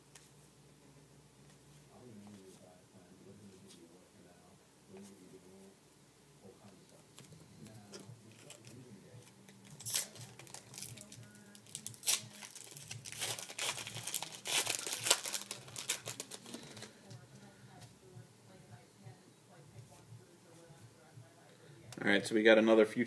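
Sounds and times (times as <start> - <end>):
wrapper tearing and crinkling: 9.7 - 17.0.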